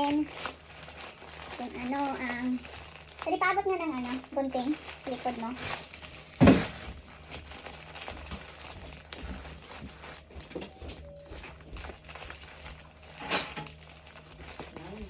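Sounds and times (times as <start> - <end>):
packaging crinkling and rustling: 0.0 - 15.0.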